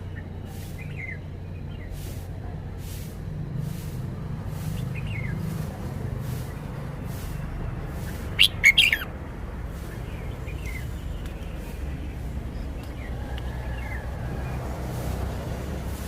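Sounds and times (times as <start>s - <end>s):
faint bird calls: 8.0s - 9.1s
bird singing whistled notes: 8.2s - 9.1s.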